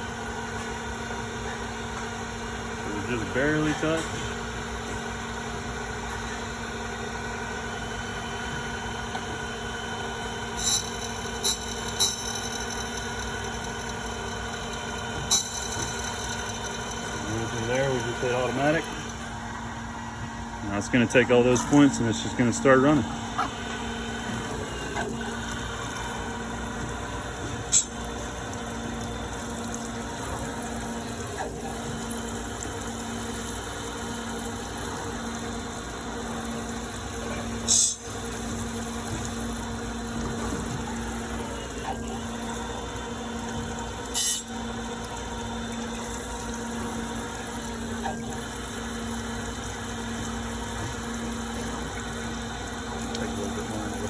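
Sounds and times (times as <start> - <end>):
grinder machine humming: 0.0 - 54.0.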